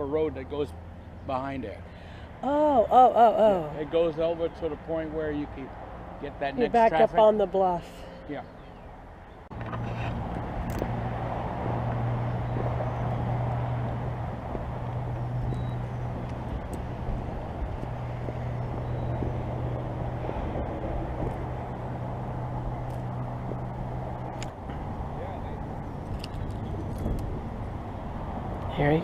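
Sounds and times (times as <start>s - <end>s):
road noise: 0.0s - 29.0s
car engine drone: 8.0s - 29.0s.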